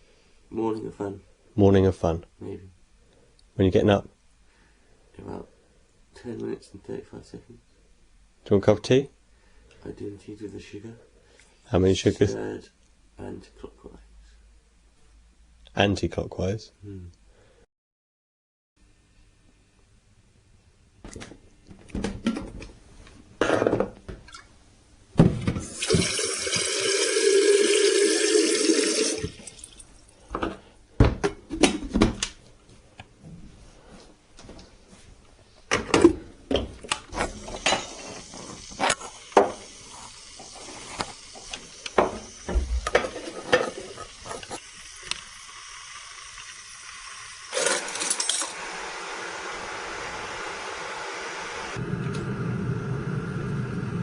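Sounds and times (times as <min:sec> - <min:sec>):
kitchen tap running: 0:25.6 - 0:29.8, 0:37.3 - 0:49.8.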